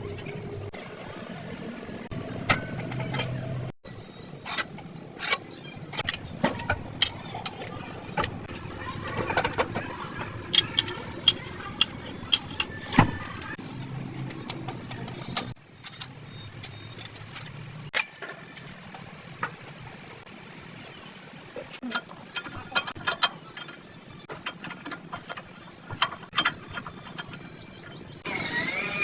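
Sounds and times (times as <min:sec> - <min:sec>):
hand tools clicking and knocking: 0:04.4 - 0:19.8, 0:21.8 - 0:29.0.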